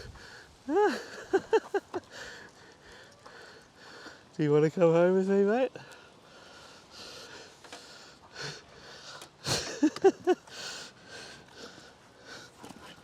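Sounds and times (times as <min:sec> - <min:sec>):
person breathing hard: 0:00.0 - 0:01.2, 0:02.0 - 0:04.3, 0:05.8 - 0:09.7, 0:10.4 - 0:13.0.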